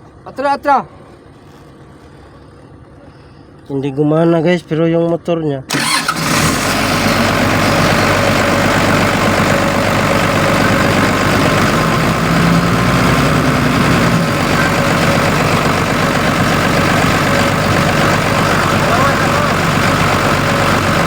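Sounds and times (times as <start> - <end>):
excavator diesel engine idling: 5.7 - 21.0.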